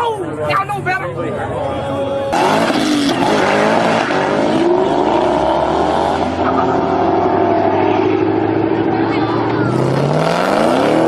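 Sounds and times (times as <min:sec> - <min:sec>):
car engine accelerating: 0:02.2 - 0:11.0.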